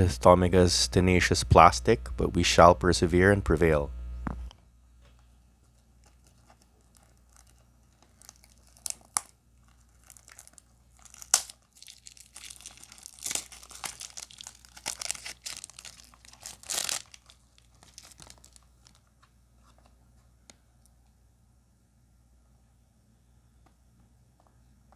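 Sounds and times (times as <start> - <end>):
plastic packaging crinkling: 5.6 - 19.8.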